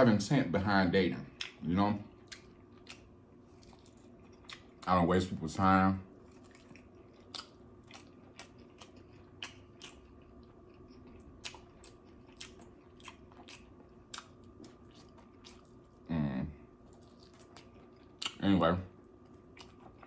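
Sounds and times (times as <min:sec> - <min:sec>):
faint steady hum: 0:00.0 - 0:20.0
wet mouth clicks and chewing: 0:02.2 - 0:04.9, 0:06.3 - 0:15.8, 0:16.9 - 0:18.4, 0:19.3 - 0:20.0.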